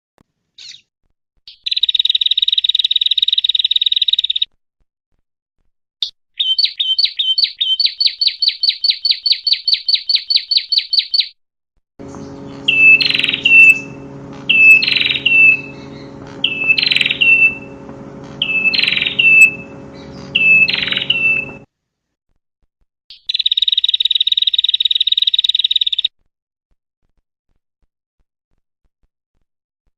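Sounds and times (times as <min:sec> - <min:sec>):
bird sharp repeated notes: 0:06.0 - 0:11.4, 0:12.0 - 0:21.7, 0:23.1 - 0:26.1
bird buzzy trill: 0:06.4 - 0:11.4, 0:12.0 - 0:21.7, 0:23.1 - 0:26.1
low steady hum: 0:12.0 - 0:21.7
bird downslurred calls: 0:12.1 - 0:21.6.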